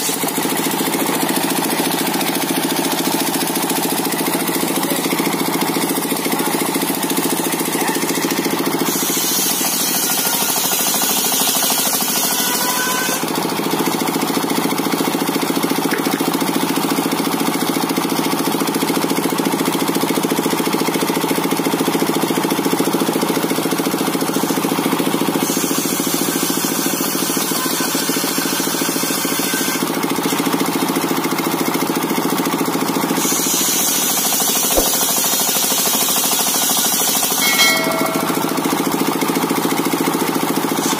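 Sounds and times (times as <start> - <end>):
saw blade cutting wood hiss: 0.0 - 1.3, 7.3 - 13.2, 33.2 - 38.9
engine-driven circular saw running: 0.0 - 40.9.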